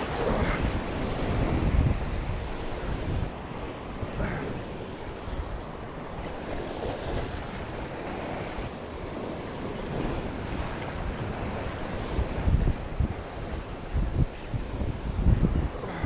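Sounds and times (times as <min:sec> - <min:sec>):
sea waves washing: 0:00.0 - 0:16.0
wind buffeting microphone: 0:00.0 - 0:16.0.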